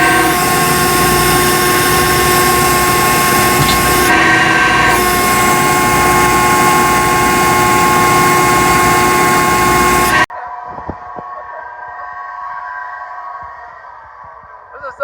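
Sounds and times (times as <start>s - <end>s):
loud machine engine running: 0.0s - 10.3s
steady whining tones: 0.0s - 10.3s.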